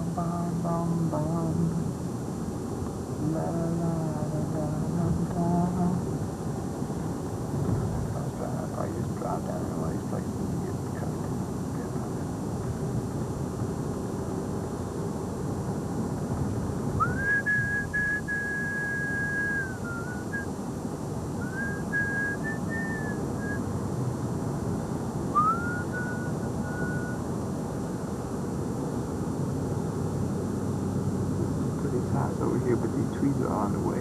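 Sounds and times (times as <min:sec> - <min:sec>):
car road noise: 0:00.0 - 0:34.0
person whistling: 0:17.0 - 0:20.4, 0:21.4 - 0:23.6, 0:25.4 - 0:27.2.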